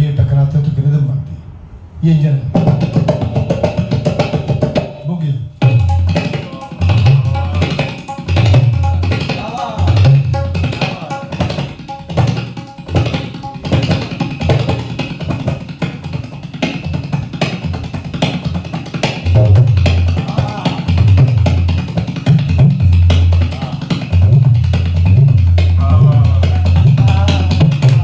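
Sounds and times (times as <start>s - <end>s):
bass drum booming: 2.5s - 4.8s, 19.3s - 28.0s
tabla rapid rhythmic strokes: 2.5s - 28.0s.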